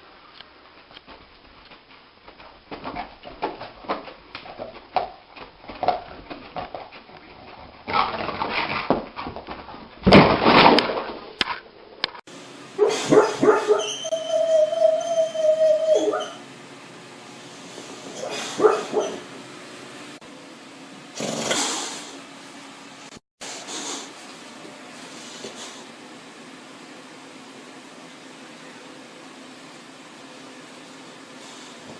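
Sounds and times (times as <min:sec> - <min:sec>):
dog whimpering and barking in sleep: 0:12.8 - 0:16.4, 0:18.1 - 0:19.2.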